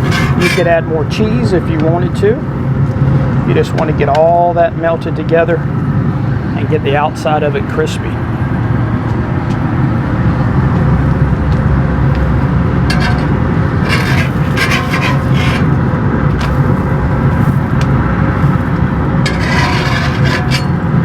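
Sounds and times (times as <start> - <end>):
metal spatula scraping griddle: 0.0 - 0.8, 12.8 - 21.0
steady low rumble: 0.0 - 21.0.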